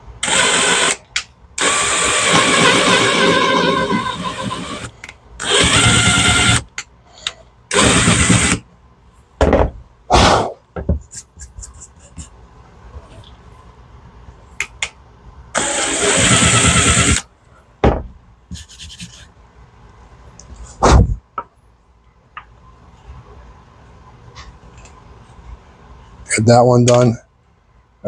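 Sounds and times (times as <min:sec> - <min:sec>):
power drill boring into wood: 0:00.2 - 0:01.0, 0:01.6 - 0:06.7, 0:07.7 - 0:08.6, 0:15.6 - 0:17.2.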